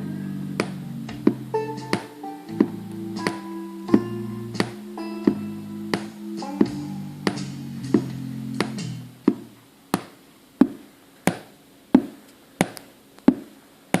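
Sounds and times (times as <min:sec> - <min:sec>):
guitar music from speaker: 0:00.0 - 0:09.6.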